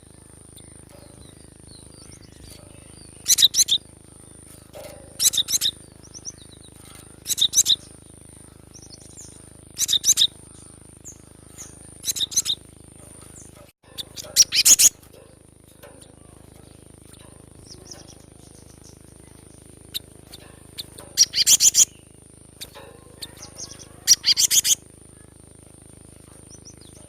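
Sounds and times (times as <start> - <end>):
bird calling high sharp notes: 0.6 - 3.9, 4.5 - 12.6, 13.4 - 15.2, 17.6 - 25.3.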